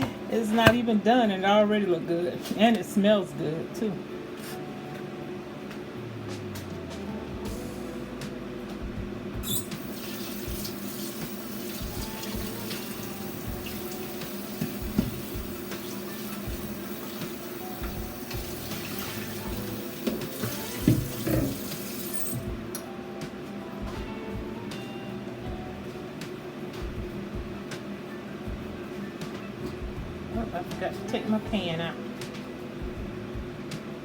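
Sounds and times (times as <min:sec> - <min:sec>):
knocks around sink: 0:00.0 - 0:00.9, 0:20.1 - 0:21.6
tap running into sink: 0:09.4 - 0:16.6, 0:17.2 - 0:22.5.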